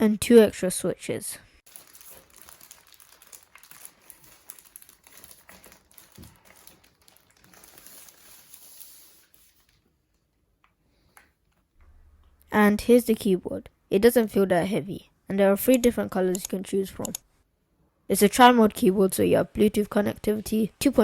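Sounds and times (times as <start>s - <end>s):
packaging crinkling: 1.6s - 10.2s.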